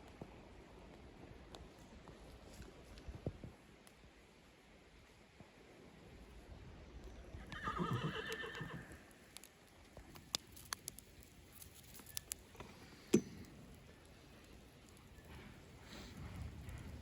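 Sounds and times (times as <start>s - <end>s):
horse whinnying: 7.4s - 9.0s.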